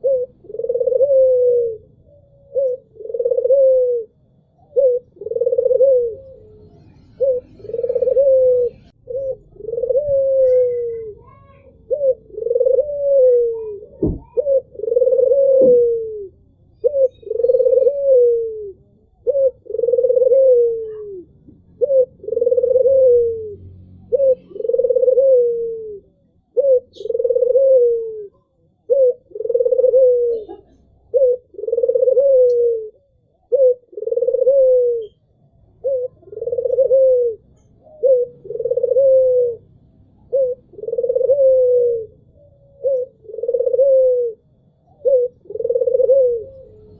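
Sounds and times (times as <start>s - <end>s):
dove cooing: 0.0s - 46.9s
sharp knock: 14.0s - 14.4s.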